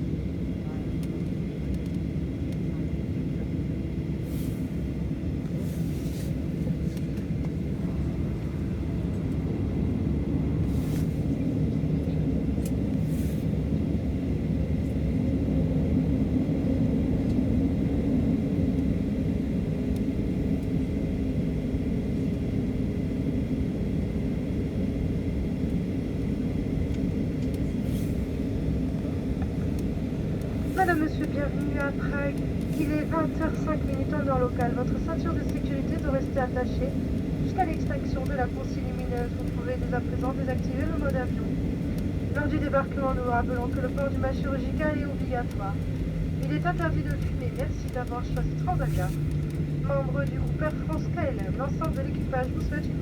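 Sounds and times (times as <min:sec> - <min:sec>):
aircraft cabin engine noise: 0:00.0 - 0:53.0
faint clicks: 0:01.0 - 0:02.6, 0:29.4 - 0:52.9.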